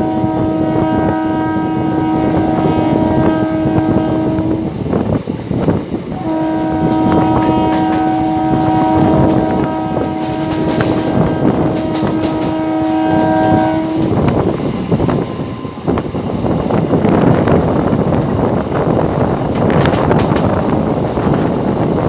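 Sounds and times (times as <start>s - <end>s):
locomotive horn long blast: 0.0s - 5.1s, 6.1s - 16.0s
train running noise: 0.0s - 22.0s
wind: 0.0s - 22.0s.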